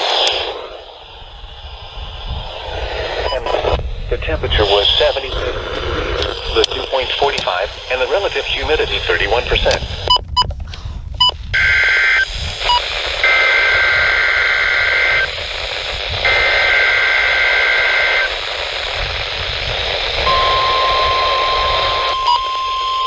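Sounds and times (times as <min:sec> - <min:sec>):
radio static: 0:00.0 - 0:23.0
short beeps: 0:03.2 - 0:03.8, 0:20.3 - 0:23.0.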